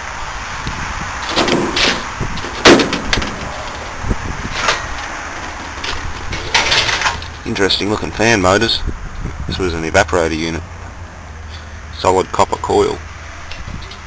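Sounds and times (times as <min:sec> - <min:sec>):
outdoor background hiss: 0:00.0 - 0:14.0
metal scrap knocking: 0:01.3 - 0:03.8, 0:04.5 - 0:07.4.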